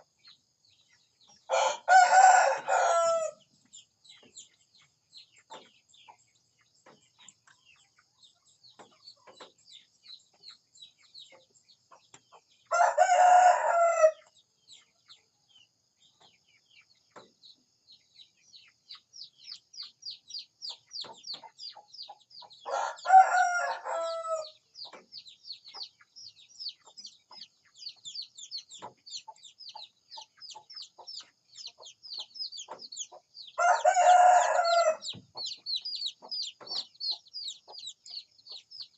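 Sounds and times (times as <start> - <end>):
rooster crowing: 1.5 - 3.4, 12.7 - 14.2, 22.7 - 24.5, 33.6 - 35.1.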